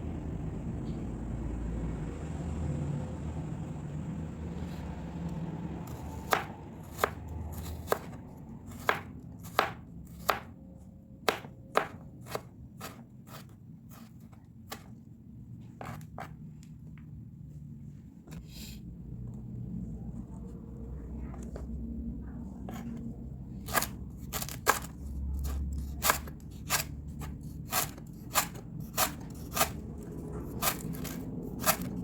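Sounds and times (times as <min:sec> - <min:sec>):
knife chopping on cutting board: 0:05.9 - 0:10.6, 0:11.2 - 0:15.0, 0:15.8 - 0:16.4, 0:23.6 - 0:29.8, 0:30.4 - 0:32.0
low rumble: 0:18.4 - 0:24.2.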